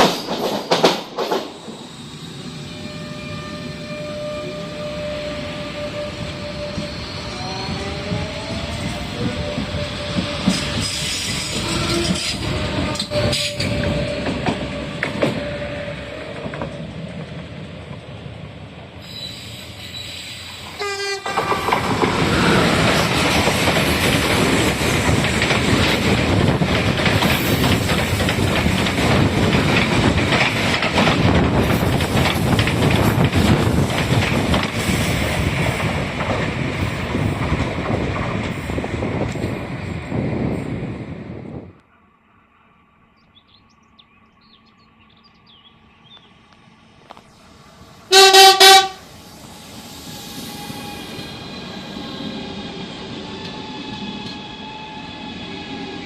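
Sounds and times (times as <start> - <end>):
train wheels clicking over rail joints: 0.0 - 1.6, 7.3 - 18.1, 20.2 - 39.8
train passing close by: 0.0 - 56.0.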